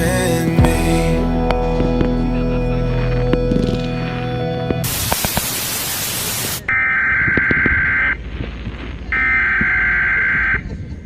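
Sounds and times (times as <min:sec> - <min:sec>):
radio static burst: 0:04.8 - 0:10.7.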